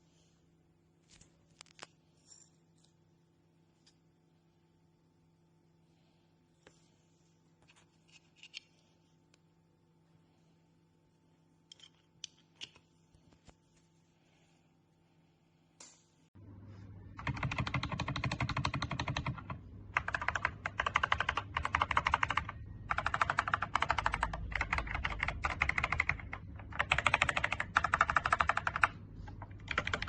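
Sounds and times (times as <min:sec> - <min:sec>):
mechanical keyboard typing: 0:17.2 - 0:30.0.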